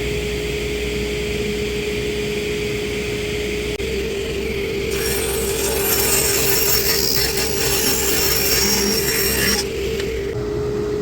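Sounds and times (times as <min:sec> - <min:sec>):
table saw motor hum: 0:03.2 - 0:10.4
table saw ripping a board: 0:04.9 - 0:10.1.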